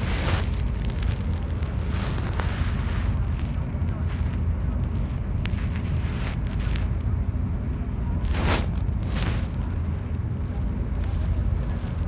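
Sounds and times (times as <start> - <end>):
ferry engine rumble: 0.0 - 12.0.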